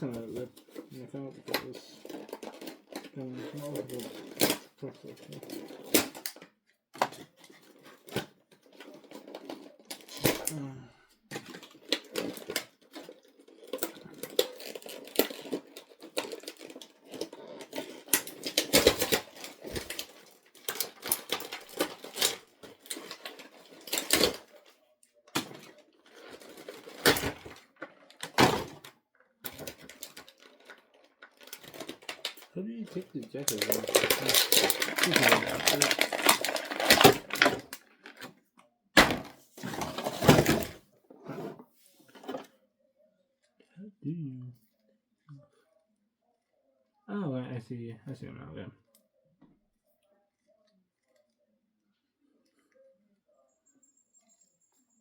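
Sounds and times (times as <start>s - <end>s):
plastic scraping and rustling: 0.0s - 42.6s
plastic packaging crinkling: 1.2s - 6.4s, 11.4s - 24.7s, 25.3s - 28.8s, 29.4s - 38.3s.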